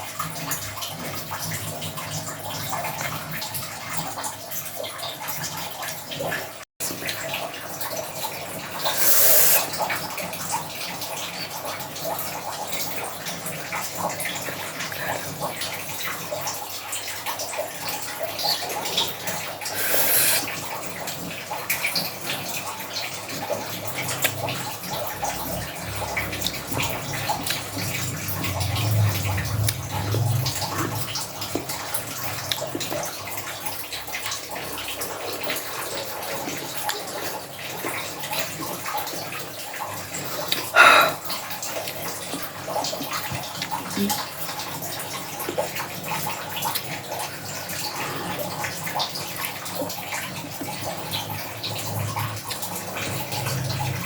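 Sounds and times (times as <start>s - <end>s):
running water rushing: 8.7s - 9.8s, 19.5s - 20.6s.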